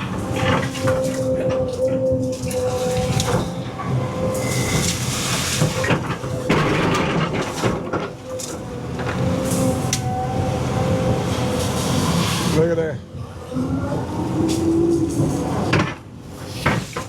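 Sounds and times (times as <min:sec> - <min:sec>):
excavator engine whine: 0:00.0 - 0:16.6.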